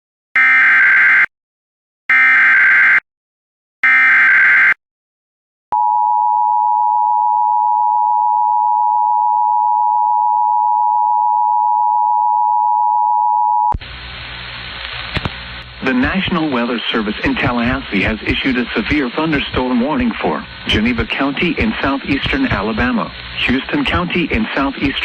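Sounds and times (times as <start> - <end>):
buzzy data bursts: 14.3 - 25.0.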